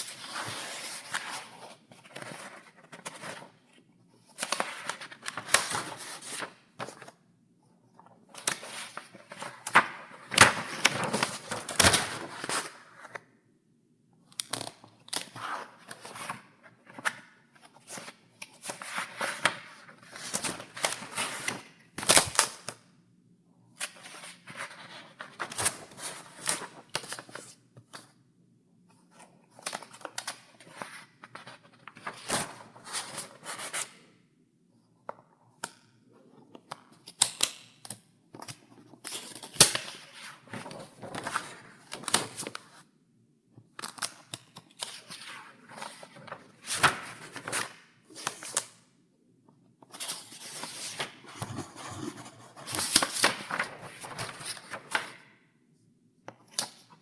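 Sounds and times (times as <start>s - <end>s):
paper pages turning: 49.9s - 55.1s.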